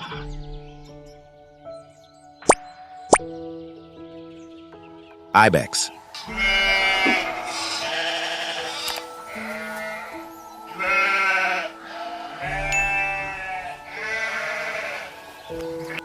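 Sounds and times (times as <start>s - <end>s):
background music: 0.0s - 16.0s
goat bleating: 6.3s - 10.2s, 10.8s - 15.2s.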